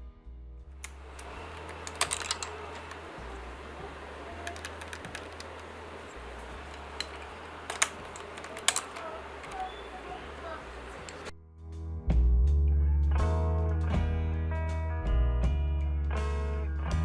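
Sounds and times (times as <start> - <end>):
mechanical keyboard key clicks: 0.8 - 11.3.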